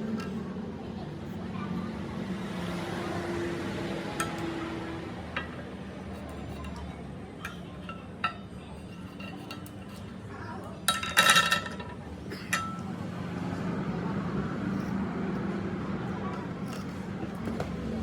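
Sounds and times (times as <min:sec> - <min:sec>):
metal tools clinking: 0:10.9 - 0:12.9.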